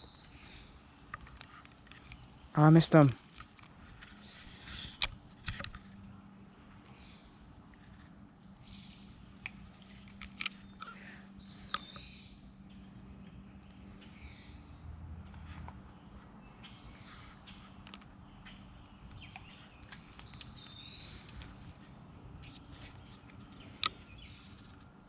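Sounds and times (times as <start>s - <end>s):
sharp clicks: 9.4s - 12.1s.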